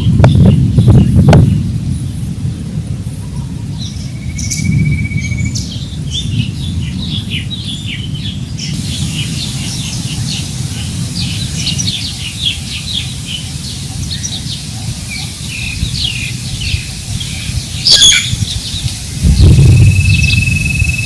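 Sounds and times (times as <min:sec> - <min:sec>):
small birds chirping: 0:00.0 - 0:21.0
wind on microphone: 0:00.0 - 0:21.0
buzzy bird trill: 0:03.8 - 0:05.8, 0:15.2 - 0:21.0.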